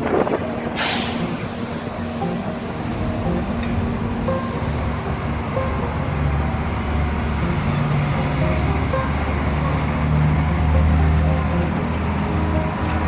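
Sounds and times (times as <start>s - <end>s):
bus engine hum: 0.0s - 13.0s
road noise: 0.0s - 13.0s
high-pitched squeals: 7.6s - 13.0s.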